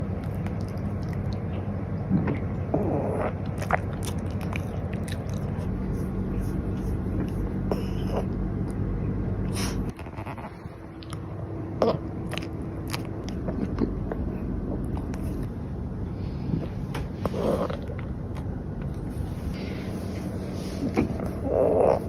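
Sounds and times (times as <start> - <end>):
steady low hum: 0.0 - 22.0
dog chewing food: 2.7 - 7.5.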